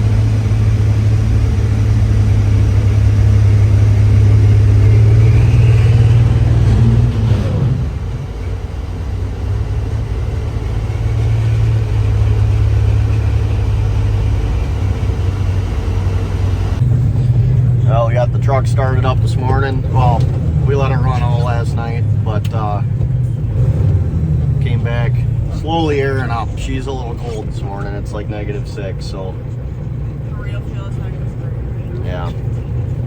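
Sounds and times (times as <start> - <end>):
tractor engine droning: 0.0 - 33.0.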